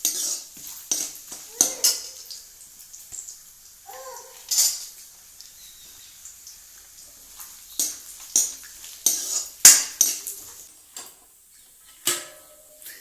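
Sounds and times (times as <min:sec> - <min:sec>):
utensil scraping and knocking pan: 0:00.0 - 0:02.2, 0:07.8 - 0:10.3
nuts frying in oil: 0:00.0 - 0:13.0.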